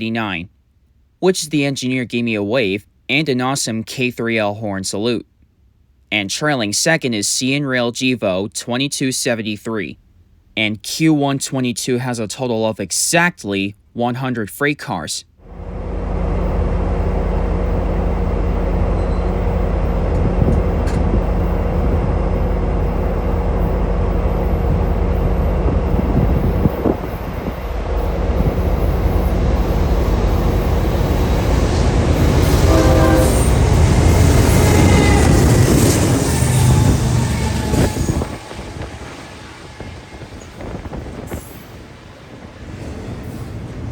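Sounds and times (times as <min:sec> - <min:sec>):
diesel locomotive engine drone: 0:15.4 - 0:43.9
train wheels and rolling cars: 0:15.5 - 0:43.9
train horn: 0:22.3 - 0:41.7.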